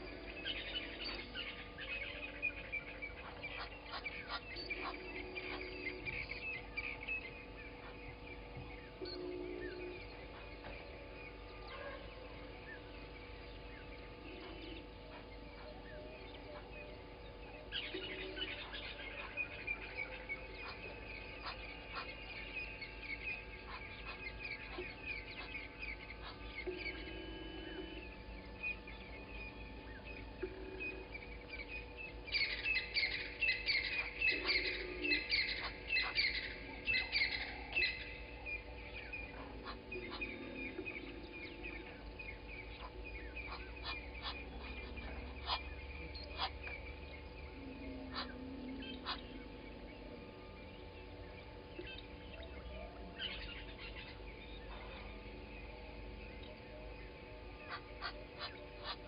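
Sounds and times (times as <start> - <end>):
birds chirping and calling: 0.0 - 59.0.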